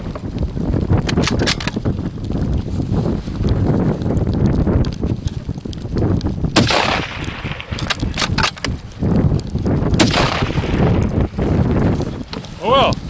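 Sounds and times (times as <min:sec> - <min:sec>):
wind rumble on microphone: 0:00.0 - 0:13.0
rifle shots with ringing echo: 0:06.6 - 0:08.6, 0:10.0 - 0:11.2.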